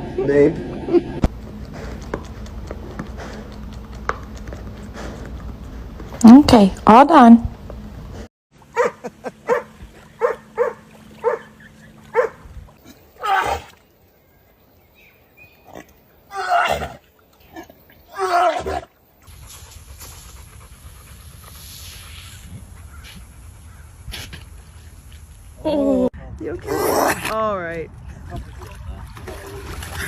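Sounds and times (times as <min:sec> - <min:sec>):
steady hiss: 0:19.3 - 0:25.6.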